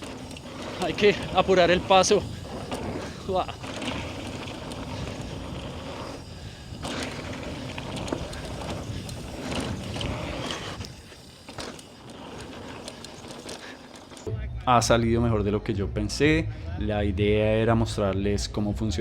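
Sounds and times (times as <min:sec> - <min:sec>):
bike rattling: 0:00.0 - 0:14.3
tyres rumbling over dirt: 0:00.0 - 0:14.3.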